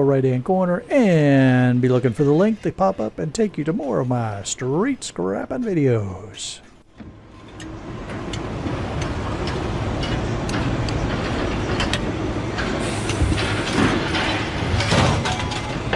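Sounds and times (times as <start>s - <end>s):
vehicle rumbling in motion: 6.9s - 15.9s.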